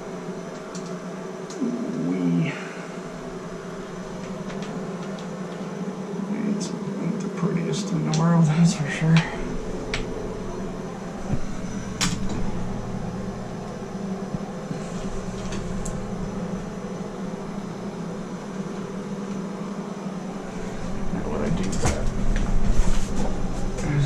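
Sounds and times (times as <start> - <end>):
torch flame burning: 8.4 - 24.0.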